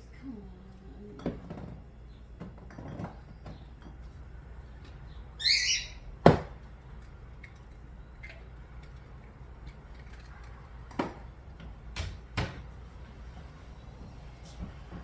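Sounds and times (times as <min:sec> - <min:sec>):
faint low hum: 0:00.0 - 0:05.4.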